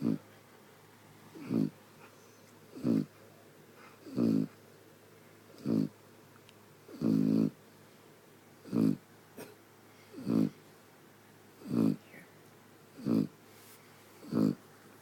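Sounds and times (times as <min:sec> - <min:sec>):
dog snoring: 0:00.0 - 0:00.2, 0:01.3 - 0:01.8, 0:02.7 - 0:03.2, 0:04.0 - 0:04.6, 0:05.5 - 0:06.0, 0:06.9 - 0:07.6, 0:08.6 - 0:09.1, 0:10.1 - 0:10.6, 0:11.6 - 0:12.2, 0:12.9 - 0:13.4, 0:14.2 - 0:14.6.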